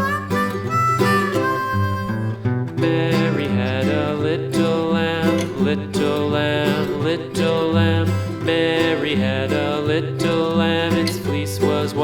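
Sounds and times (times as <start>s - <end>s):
harmonica: 0.0s - 6.2s
country music with guitar: 0.0s - 12.0s.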